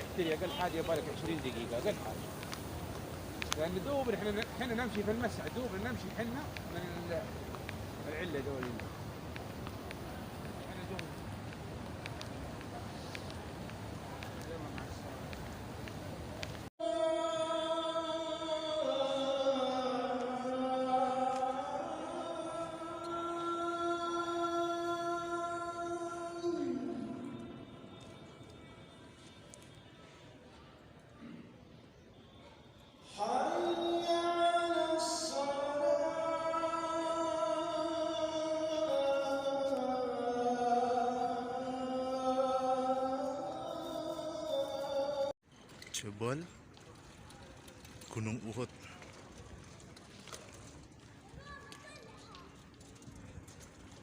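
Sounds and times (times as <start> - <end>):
chanting in long held notes: 16.8 - 29.3, 33.0 - 45.4.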